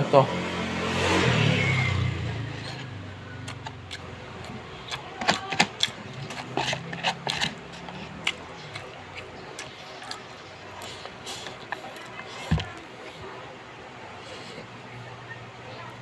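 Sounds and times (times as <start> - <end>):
person chewing crispy food: 2.3 - 13.4.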